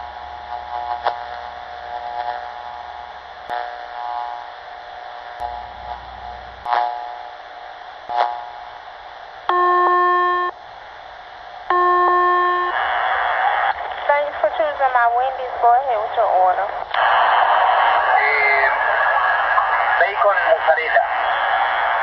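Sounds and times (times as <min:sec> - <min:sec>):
radio hiss: 0:00.0 - 0:22.0
loud electronic beep: 0:09.5 - 0:10.5, 0:11.7 - 0:12.8.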